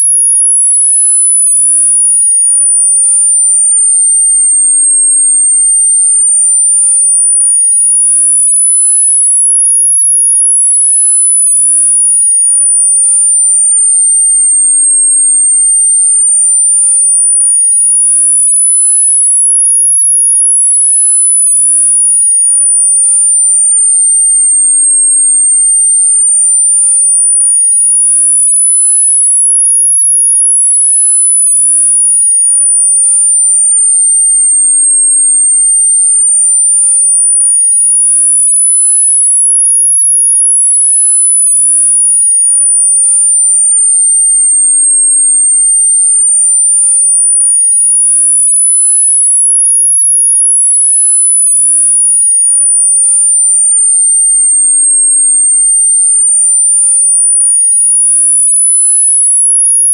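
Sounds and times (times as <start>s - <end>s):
high-pitched sine tone gliding: 0.0s - 59.9s.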